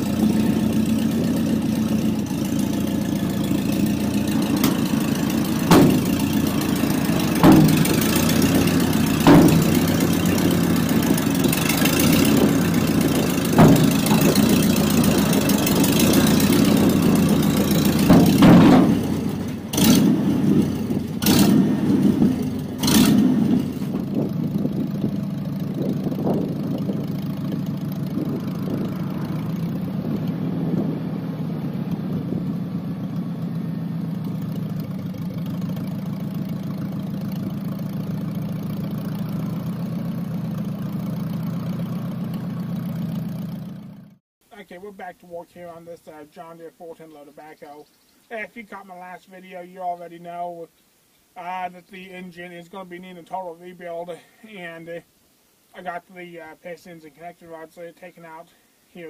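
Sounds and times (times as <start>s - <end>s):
engine running at low revs: 0.0s - 44.2s
sharp knocks: 3.3s - 24.1s.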